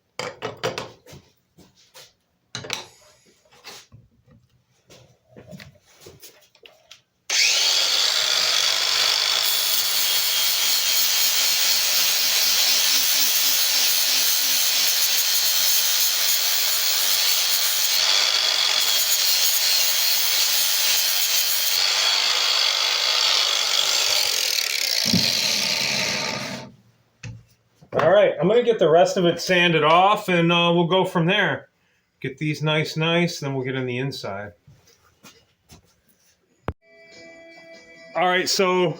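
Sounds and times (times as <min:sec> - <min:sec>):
angle grinder sanding metal: 0:07.3 - 0:26.7.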